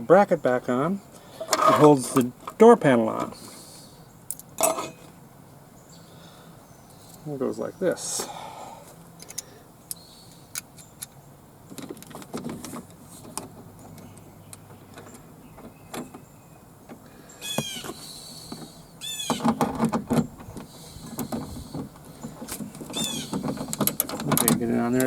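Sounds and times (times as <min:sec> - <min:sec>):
clatter of parts: 0:11.7 - 0:14.2, 0:19.3 - 0:25.0
metal parts clicking and knocking: 0:17.6 - 0:25.0.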